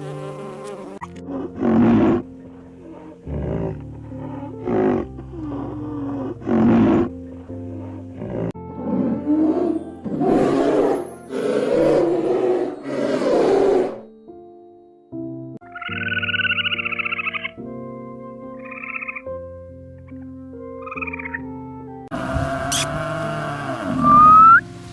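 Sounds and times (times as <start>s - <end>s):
background music: 0.0s - 24.9s
large animal roaring: 2.8s - 7.1s, 7.7s - 14.1s, 22.1s - 24.6s.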